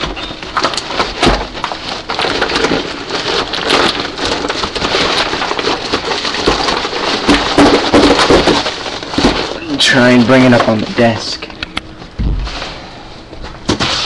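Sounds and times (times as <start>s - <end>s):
packaging crackling and crinkling: 0.0s - 11.9s.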